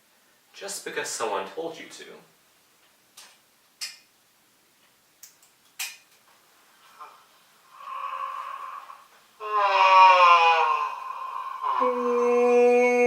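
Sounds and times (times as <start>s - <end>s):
person yawning: 7.7s - 13.0s.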